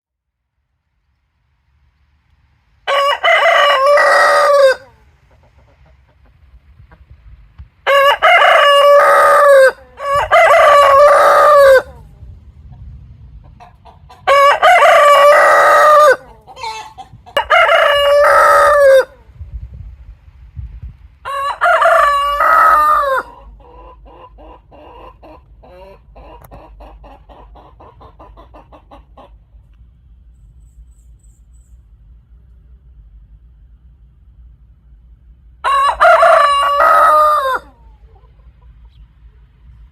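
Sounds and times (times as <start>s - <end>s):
roosters crowing: 2.8s - 5.8s, 7.8s - 12.2s, 13.6s - 19.4s, 21.2s - 29.4s, 35.6s - 38.6s.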